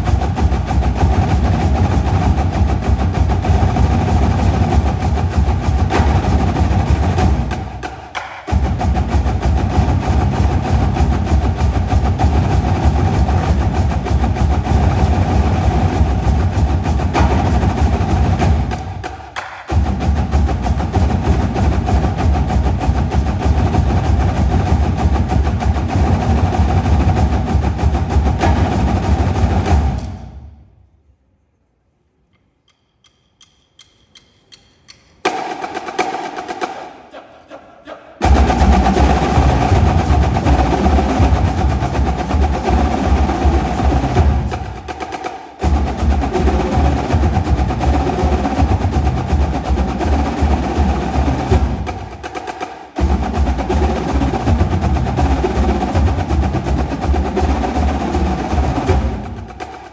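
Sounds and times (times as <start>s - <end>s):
marching drumline playing: 0.0s - 30.7s, 35.2s - 37.4s, 38.1s - 59.9s
drumstick clicks: 32.3s - 35.2s.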